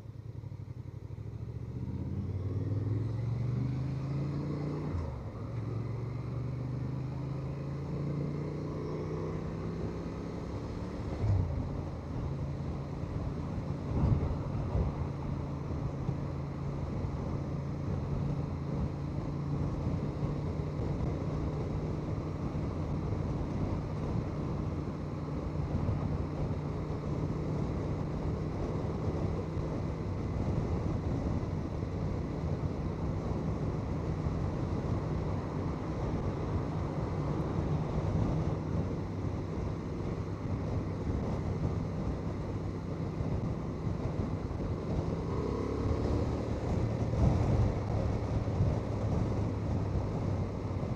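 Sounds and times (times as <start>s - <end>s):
motorcycle engine cruising: 0.0s - 50.9s
wind rushing over microphone: 9.5s - 50.9s.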